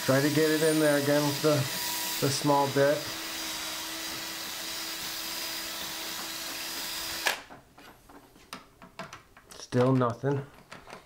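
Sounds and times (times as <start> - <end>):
electric drill running: 0.0 - 7.5.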